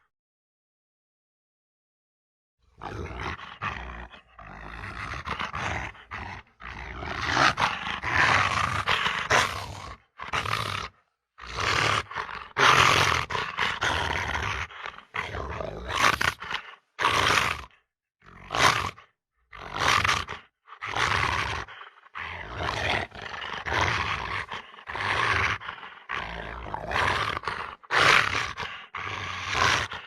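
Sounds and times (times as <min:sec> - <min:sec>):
creature screeches and growling roars: 0:15.0 - 0:16.5.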